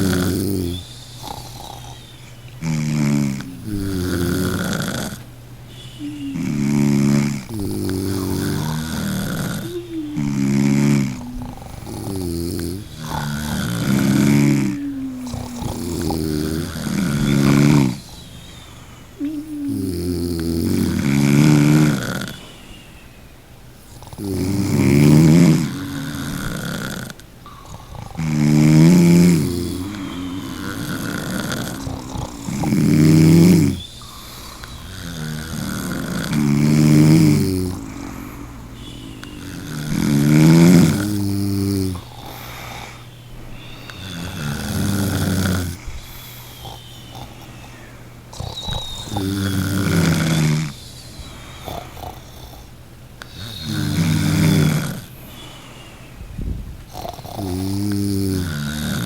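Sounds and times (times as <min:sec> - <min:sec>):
person snoring loudly: 0:00.0 - 0:22.6, 0:23.8 - 0:55.6, 0:56.9 - 0:59.0
soft breathing: 0:00.0 - 0:57.6.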